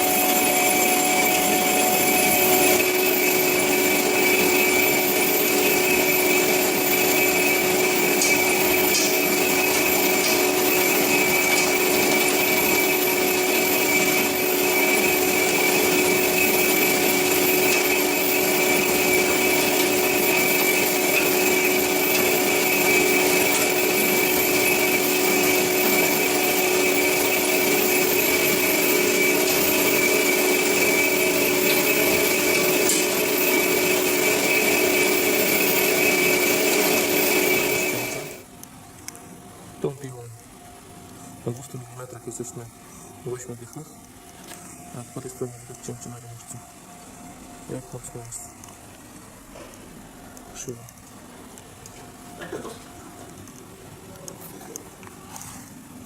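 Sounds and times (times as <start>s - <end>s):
band saw cutting metal: 0.0s - 38.5s.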